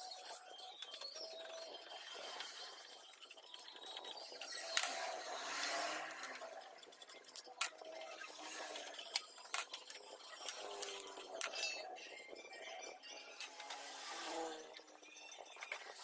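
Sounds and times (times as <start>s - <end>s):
small metal parts clinking: 6.0s - 12.0s.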